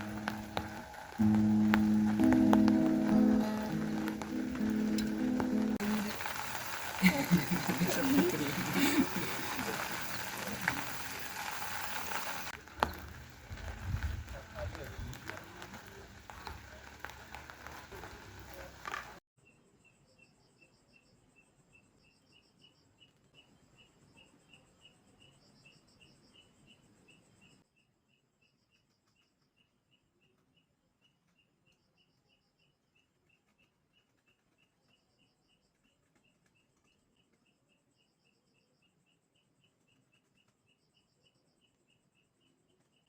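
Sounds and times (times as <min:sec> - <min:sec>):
crickets chirping: 0:00.0 - 0:19.0
food sizzling in a pan: 0:00.0 - 0:19.2.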